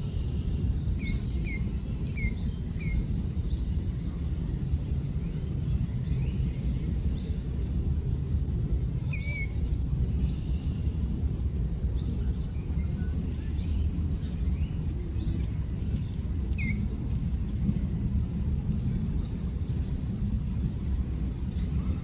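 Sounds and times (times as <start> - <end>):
steady low rumble: 0.0 - 22.0
bird calling: 1.0 - 3.2, 16.6 - 17.0.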